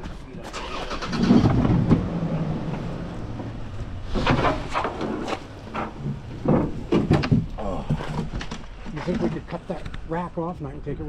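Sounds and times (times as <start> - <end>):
vehicle engine humming: 0.0 - 8.8.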